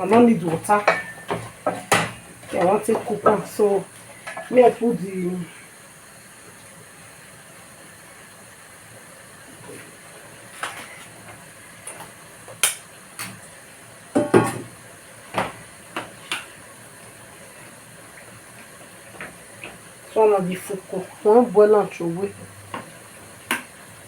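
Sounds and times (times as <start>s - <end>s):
cookware clinking and knocking: 0.8s - 3.4s, 14.2s - 14.7s.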